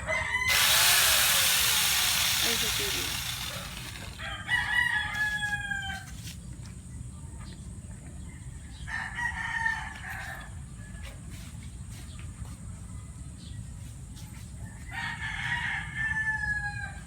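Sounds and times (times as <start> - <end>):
rooster crowing: 0.0 - 1.4, 4.0 - 6.1, 15.0 - 17.0.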